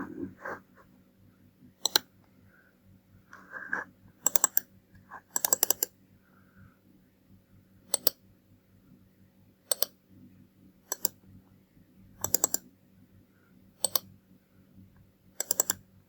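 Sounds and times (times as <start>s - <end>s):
computer mouse clicking: 1.8s - 2.1s, 4.2s - 4.7s, 5.3s - 6.0s, 7.9s - 8.2s, 9.7s - 10.0s, 10.9s - 11.2s, 12.2s - 12.7s, 13.8s - 14.1s, 15.4s - 15.8s.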